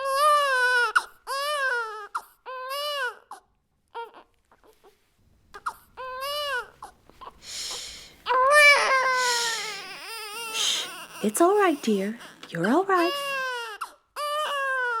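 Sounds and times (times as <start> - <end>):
newborn baby crying: 0.0 - 15.0.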